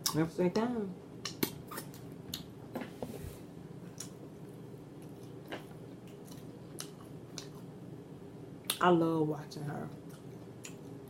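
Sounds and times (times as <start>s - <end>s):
person chewing food: 3.8s - 7.7s.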